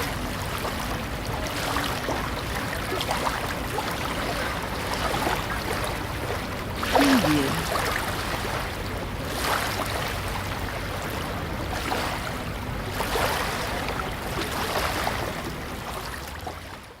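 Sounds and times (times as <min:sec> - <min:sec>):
faint crowd voices: 0:06.8 - 0:07.8
surf washing in: 0:06.8 - 0:08.6.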